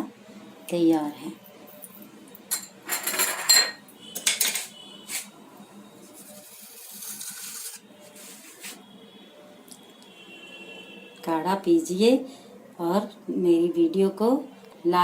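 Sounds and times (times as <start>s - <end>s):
utensils clinking and scraping: 2.5s - 5.3s, 6.2s - 7.8s.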